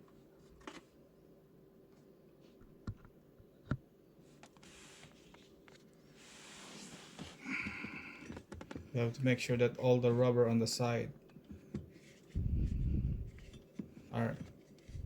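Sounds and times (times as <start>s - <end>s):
soft rubbing and scraping: 4.3s - 7.4s, 11.9s - 15.0s.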